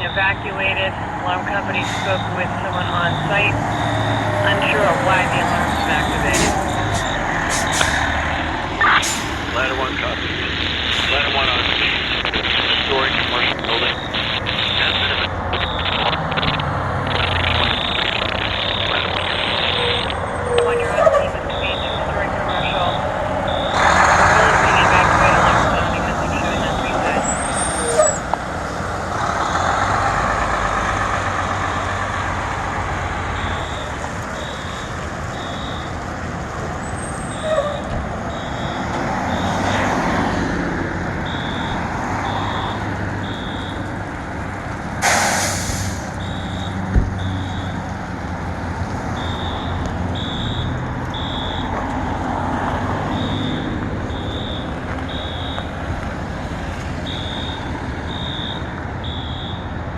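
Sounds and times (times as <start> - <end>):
fire truck engine running: 0.0 - 59.9
air brake hiss: 6.4 - 8.1, 45.0 - 46.2
fire alarm high beeps: 19.8 - 23.8, 33.3 - 36.0, 36.9 - 40.1, 41.2 - 43.9, 46.2 - 47.9, 49.2 - 51.8, 53.0 - 55.9, 57.0 - 59.7.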